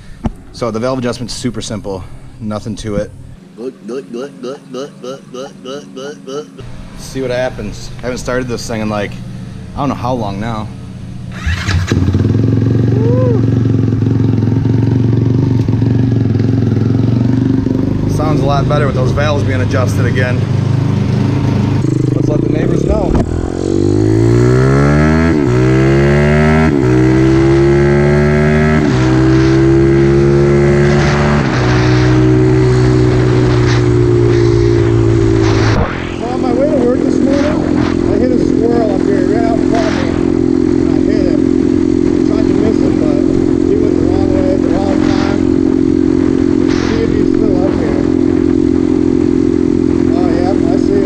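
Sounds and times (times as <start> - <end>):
trail bike engine accelerating: 6.6 - 51.0
small motorbike engine running: 11.3 - 18.0.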